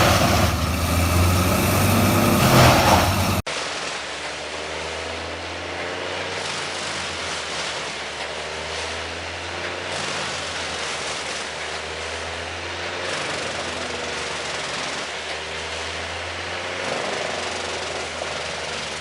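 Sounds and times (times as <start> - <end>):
heavy diesel engine running: 0.0 - 3.4.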